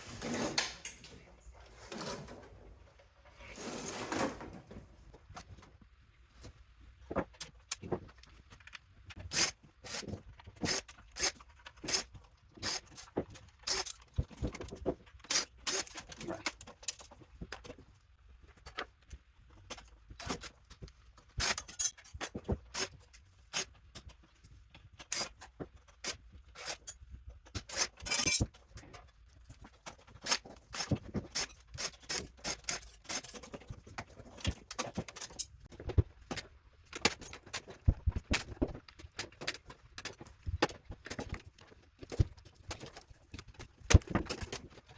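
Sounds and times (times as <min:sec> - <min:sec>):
metal scrape: 0:03.3 - 0:04.5
metal parts and tools clinking: 0:21.4 - 0:22.4, 0:25.0 - 0:38.0.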